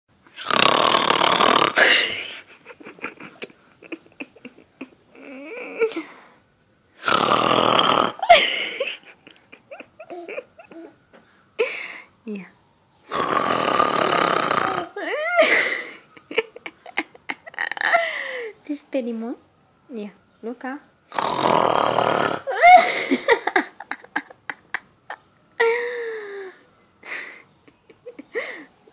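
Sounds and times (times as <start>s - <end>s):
person snoring loudly: 0.4s - 2.4s, 7.0s - 8.3s, 13.1s - 15.0s, 21.1s - 23.0s
baby whimpering cries: 9.7s - 11.0s.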